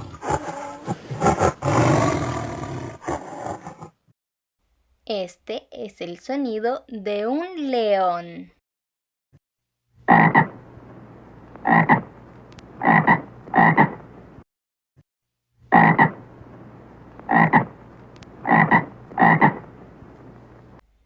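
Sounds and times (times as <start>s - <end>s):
frog croaking: 10.0s - 10.6s, 11.6s - 12.1s, 12.8s - 14.0s, 15.7s - 16.2s, 17.2s - 17.8s, 18.4s - 19.7s.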